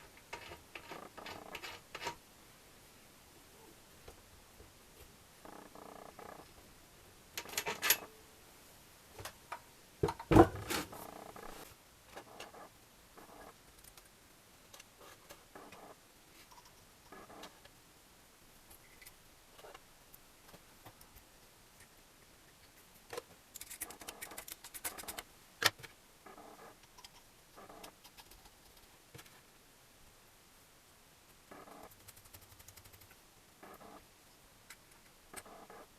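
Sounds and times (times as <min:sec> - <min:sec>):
metal parts and tools clinking: 0:07.4 - 0:08.1.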